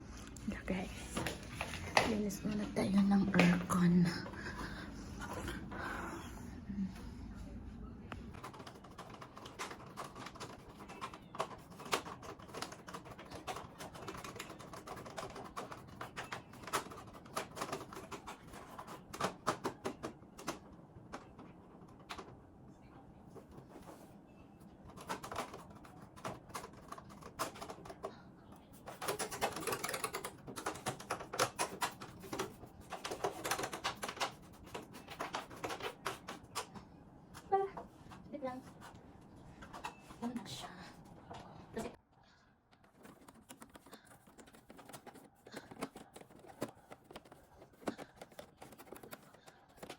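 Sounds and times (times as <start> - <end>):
plastic clicking and rattling: 24.9 - 36.8, 42.7 - 49.9.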